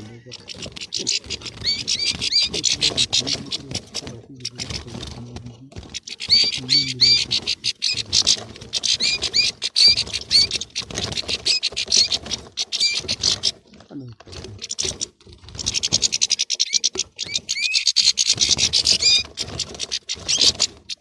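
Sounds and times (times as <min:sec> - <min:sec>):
goldfinches twittering and chirping: 0:00.0 - 0:13.6, 0:14.3 - 0:21.0.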